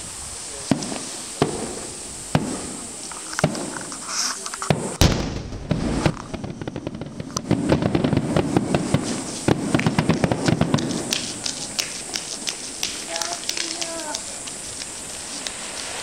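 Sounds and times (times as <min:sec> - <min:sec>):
firework crackling and popping: 0:00.0 - 0:16.0
firework boom: 0:00.6 - 0:03.7, 0:04.7 - 0:12.4.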